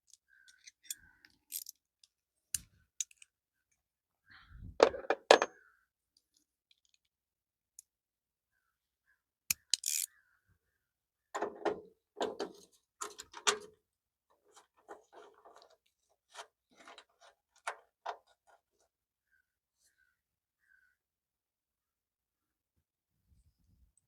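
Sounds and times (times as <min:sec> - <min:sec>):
metallic clicks of hand tools: 0:02.6 - 0:03.3, 0:09.5 - 0:10.1.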